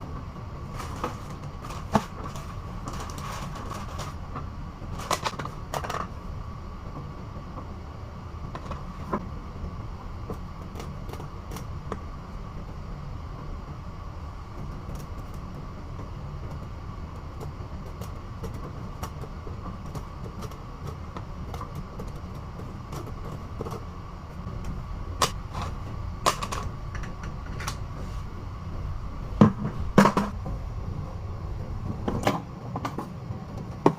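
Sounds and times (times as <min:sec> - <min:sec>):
faint steady whine: 0:00.0 - 0:33.9
low machinery drone: 0:00.0 - 0:33.9.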